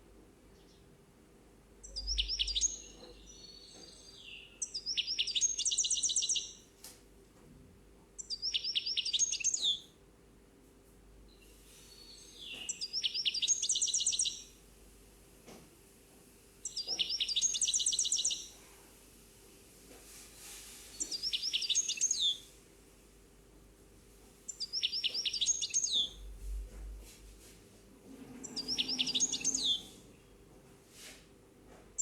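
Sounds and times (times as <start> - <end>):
songbird singing: 1.8 - 6.6, 8.2 - 9.9, 11.3 - 14.6, 16.6 - 18.6, 20.9 - 22.5, 24.5 - 27.0, 28.3 - 30.4.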